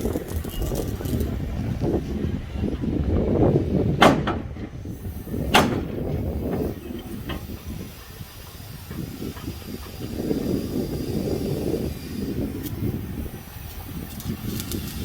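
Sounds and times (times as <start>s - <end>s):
low rumbling noise: 0.0s - 11.5s
sharp knocks of repair work: 4.0s - 4.6s, 5.5s - 6.7s.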